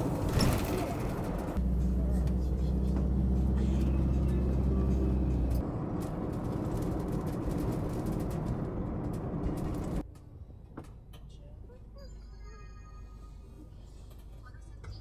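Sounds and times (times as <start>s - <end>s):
low engine hum: 0.0s - 10.0s.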